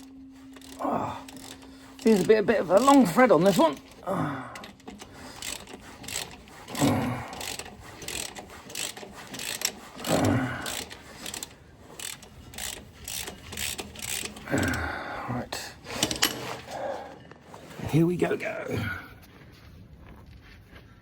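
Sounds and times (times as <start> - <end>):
socket ratchet clicking: 4.6 - 14.8.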